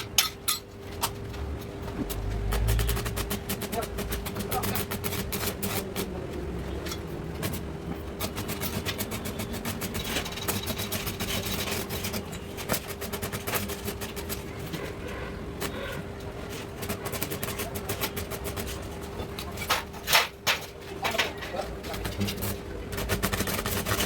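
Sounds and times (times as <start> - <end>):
electrical hum: 1.2 - 7.9
arc welding crackle: 1.4 - 6.7.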